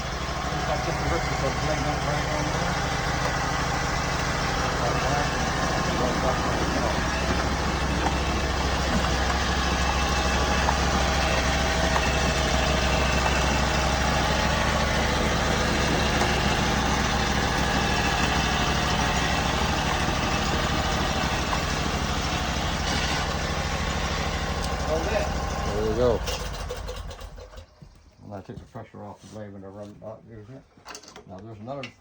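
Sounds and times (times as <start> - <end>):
sawmill engine droning: 0.0 - 27.8
saw blade cutting log: 22.8 - 23.4.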